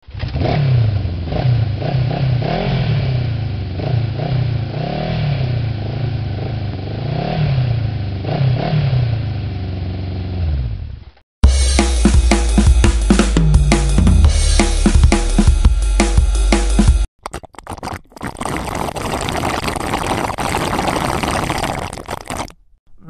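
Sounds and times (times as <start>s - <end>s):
motorcycle engines revving: 0.1s - 10.8s
drum loop: 11.4s - 17.1s.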